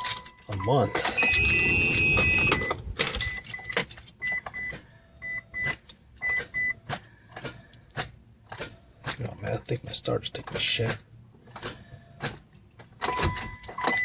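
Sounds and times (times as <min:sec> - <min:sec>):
engine starter cranking: 0:00.0 - 0:04.8.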